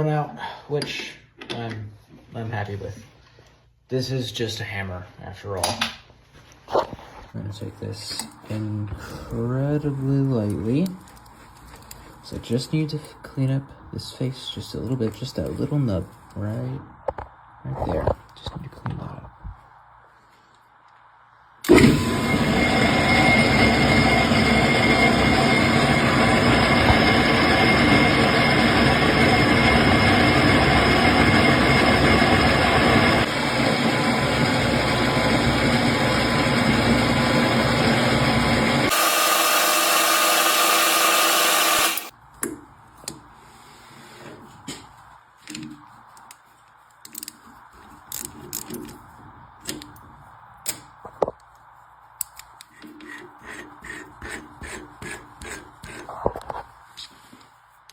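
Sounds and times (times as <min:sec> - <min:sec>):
metal lathe running: 0:21.7 - 0:42.1
small clicks and knocks of handling: 0:45.4 - 0:49.0, 0:52.2 - 0:52.9.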